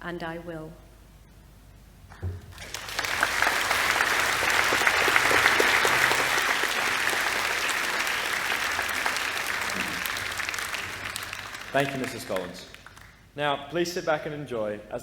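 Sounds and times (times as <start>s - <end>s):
audience applauding: 2.5s - 13.3s.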